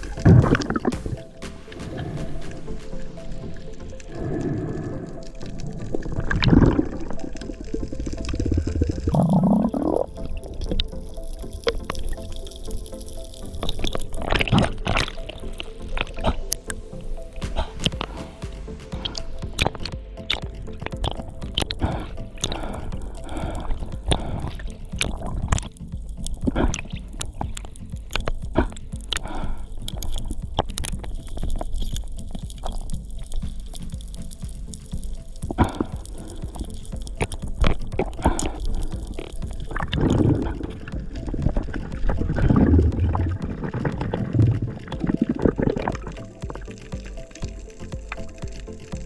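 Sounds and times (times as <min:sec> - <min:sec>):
water washing: 0:00.0 - 0:49.0.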